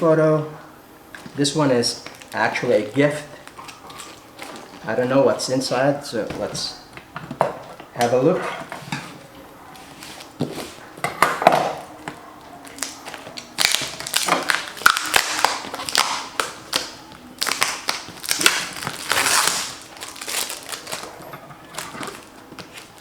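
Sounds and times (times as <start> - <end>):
packaging torn and crinkled: 12.6 - 23.0.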